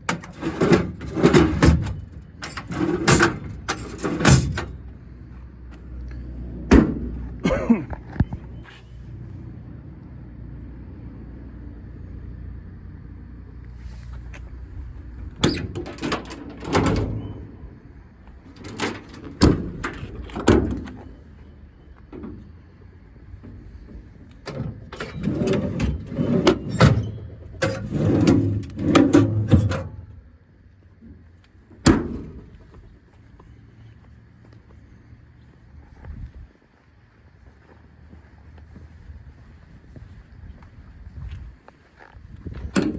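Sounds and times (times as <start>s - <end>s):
latch clicks: 0.0s - 4.8s, 6.0s - 7.4s, 15.0s - 21.2s, 23.3s - 30.2s, 31.7s - 32.6s, 42.6s - 42.9s
metal rattles: 0.0s - 4.9s, 14.6s - 17.7s, 18.3s - 21.2s
metal doors clunking: 0.0s - 5.0s, 5.7s - 8.6s, 14.3s - 30.4s, 31.0s - 32.8s, 42.5s - 42.9s.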